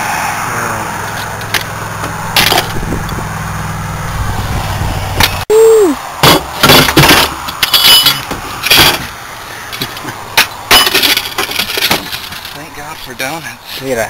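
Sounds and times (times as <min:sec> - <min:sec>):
metallic clanks of tools: 0:09.8 - 0:12.6.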